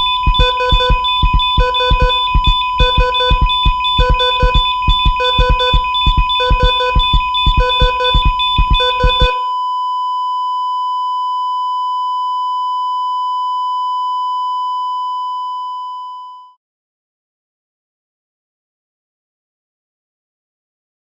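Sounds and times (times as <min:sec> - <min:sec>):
heart monitor beeping: 0:00.0 - 0:09.7
flatline tone: 0:00.0 - 0:10.3.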